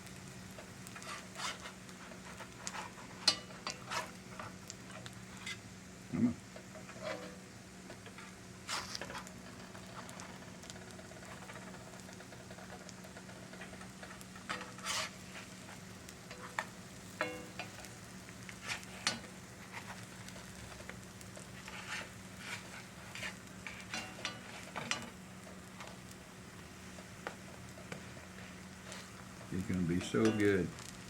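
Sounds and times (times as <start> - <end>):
pancakes sizzling in oil: 0.0 - 31.0
spatula scraping and tapping pan: 0.5 - 5.6, 6.5 - 26.1, 26.9 - 30.9.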